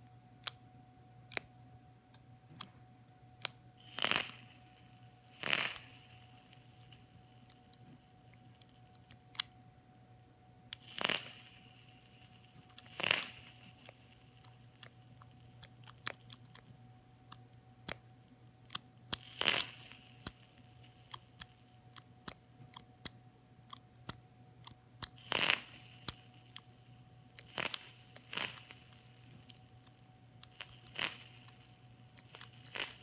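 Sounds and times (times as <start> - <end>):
faint steady hum: 0.0 - 33.0
coil crackling: 3.4 - 9.5, 10.7 - 33.0
vape mod clicking: 3.4 - 9.5, 10.7 - 16.7, 18.7 - 26.7, 27.3 - 33.0.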